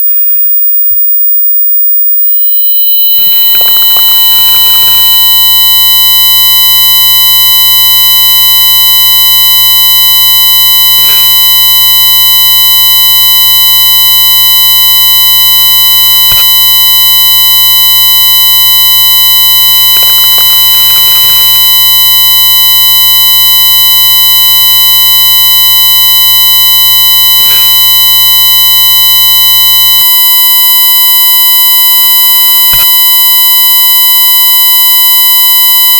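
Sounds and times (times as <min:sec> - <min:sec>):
high-pitched electronic tones: 0:00.0 - 0:07.0.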